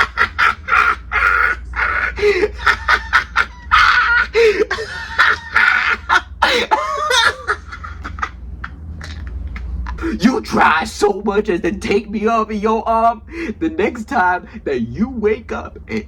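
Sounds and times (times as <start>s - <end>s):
man laughing and shrieking: 0.0s - 8.3s, 9.0s - 11.1s.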